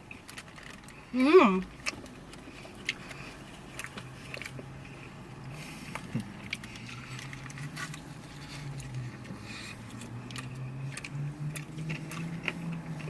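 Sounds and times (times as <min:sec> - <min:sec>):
chewing food: 0:00.0 - 0:13.0
low steady hum: 0:00.0 - 0:13.0
wet mouth clicks and crunches: 0:08.7 - 0:13.0.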